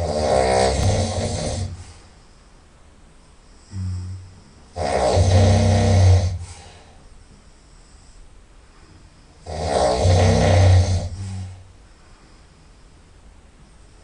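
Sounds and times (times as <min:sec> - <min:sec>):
person snoring loudly: 0:00.0 - 0:01.9, 0:03.7 - 0:06.7, 0:09.4 - 0:11.6.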